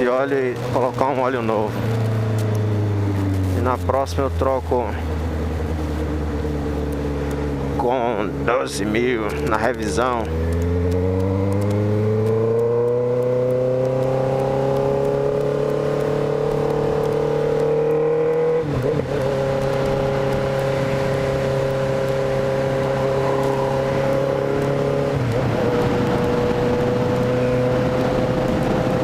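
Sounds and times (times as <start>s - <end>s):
motorcycle engine accelerating: 0.0s - 29.0s.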